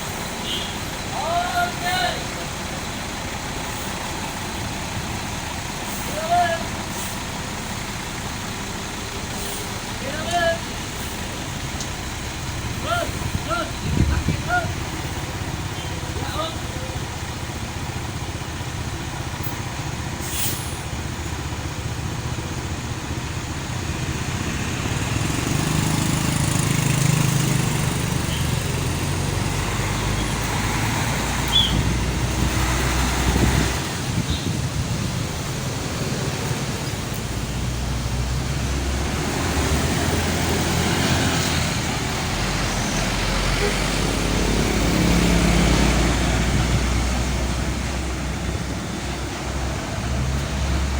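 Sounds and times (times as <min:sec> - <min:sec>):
diesel bus engine humming: 0:00.0 - 0:50.9
street traffic: 0:00.0 - 0:50.9
short hiss: 0:20.2 - 0:20.8.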